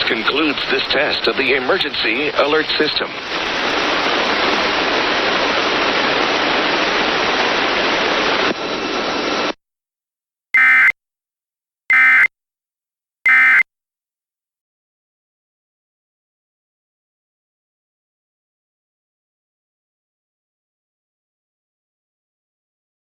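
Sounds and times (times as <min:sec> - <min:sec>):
static hiss: 0:00.0 - 0:09.6.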